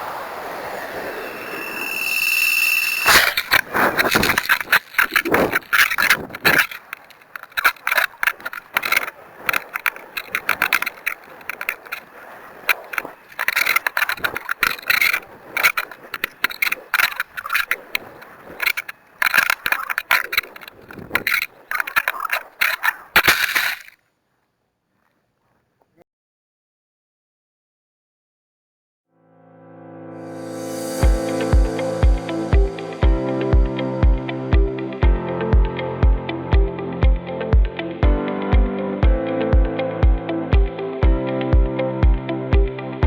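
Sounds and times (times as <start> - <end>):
scraping and clicking handling noise: 3.1 - 24.0.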